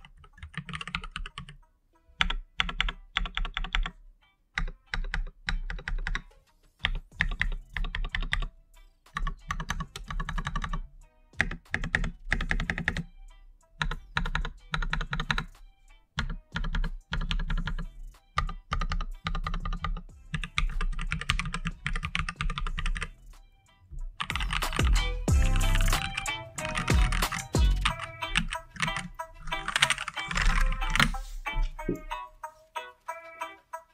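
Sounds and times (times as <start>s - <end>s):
keyboard keys clacking: 0.0s - 4.0s, 4.6s - 8.5s, 9.1s - 33.9s
music: 0.0s - 33.9s.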